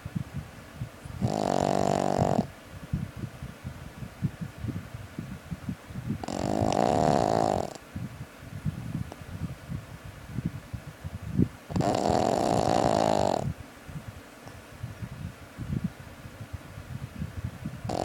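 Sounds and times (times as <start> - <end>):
puppy snoring: 1.1 - 2.5, 6.2 - 7.8, 11.7 - 13.5.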